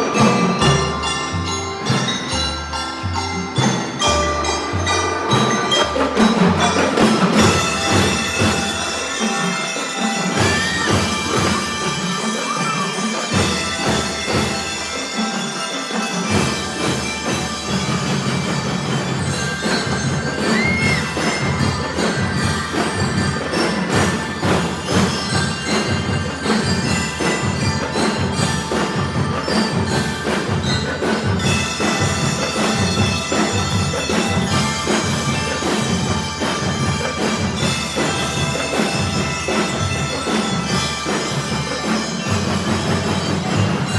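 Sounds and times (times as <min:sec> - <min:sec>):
bell lyres playing melody: 0:00.0 - 0:43.9
marching drums beat: 0:00.0 - 0:43.9.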